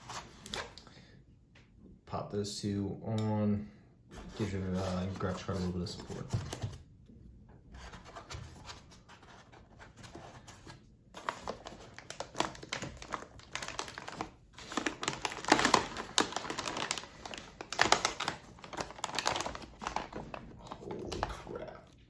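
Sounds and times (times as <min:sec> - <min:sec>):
packaging crinkling: 0:07.9 - 0:21.6.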